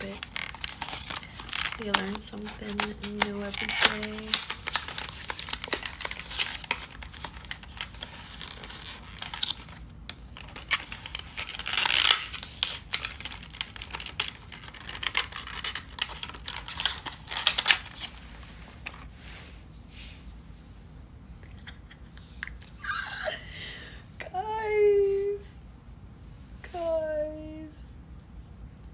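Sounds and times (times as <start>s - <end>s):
packaging tearing: 0.0s - 18.2s
packaging crinkling and rustling: 0.0s - 19.1s.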